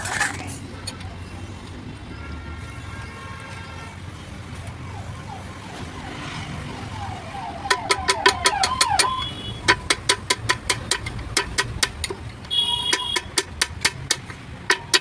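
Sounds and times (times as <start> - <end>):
rapid metal-on-metal tapping: 7.6 - 15.0.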